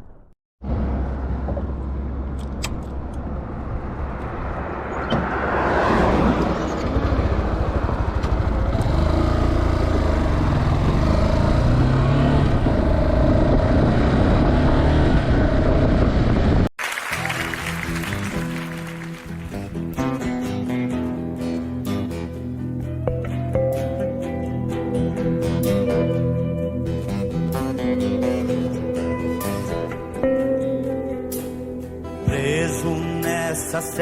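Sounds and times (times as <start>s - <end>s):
motorcycle engine rumble: 6.4s - 16.7s.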